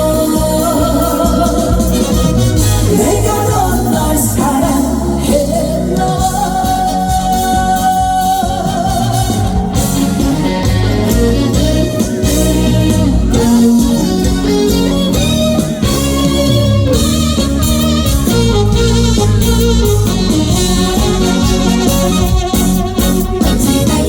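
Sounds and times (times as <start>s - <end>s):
man singing: 0.0s - 10.4s
backing band playing: 0.0s - 24.0s.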